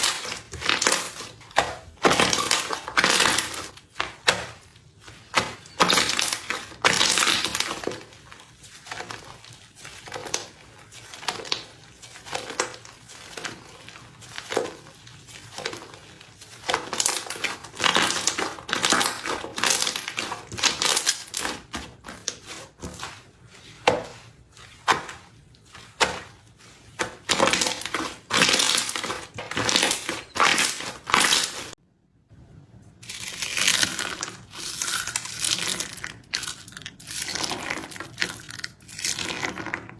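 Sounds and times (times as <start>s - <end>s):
crispy slime crackling and popping: 0.0s - 31.8s.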